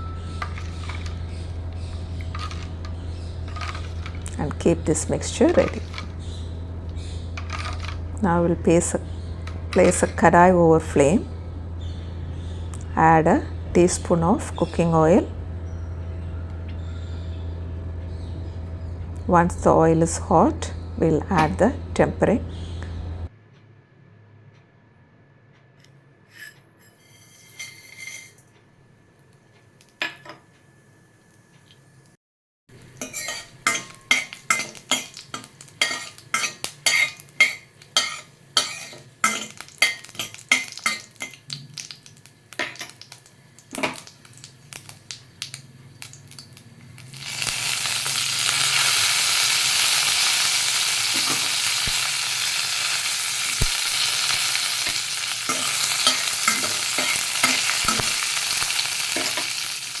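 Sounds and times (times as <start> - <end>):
spices crackling in hot oil: 0.0 - 10.4, 32.7 - 60.0
loud steady sizzle: 0.0 - 23.3, 30.8 - 60.0.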